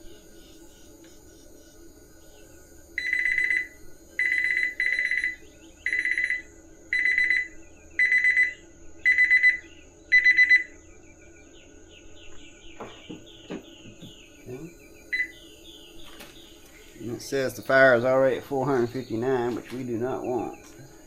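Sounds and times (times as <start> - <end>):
high electronic alarm beeps: 3.0 - 10.8, 14.5 - 15.4.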